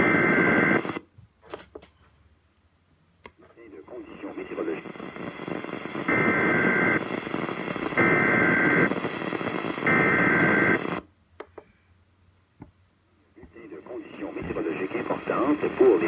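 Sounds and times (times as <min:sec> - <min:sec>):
radio hiss: 0:00.0 - 0:01.0, 0:03.4 - 0:11.0, 0:13.4 - 0:16.0.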